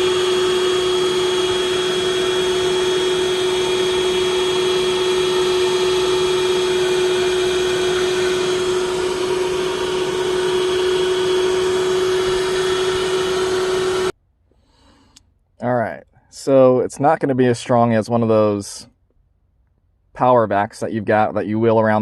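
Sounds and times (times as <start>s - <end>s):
car vacuum cleaner running: 0.0s - 14.2s.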